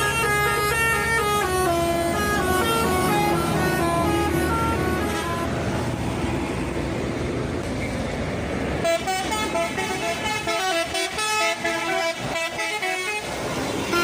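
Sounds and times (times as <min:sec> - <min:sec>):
horn playing jumpy melody: 0:00.0 - 0:05.6
bus engine and road noise: 0:00.0 - 0:14.0.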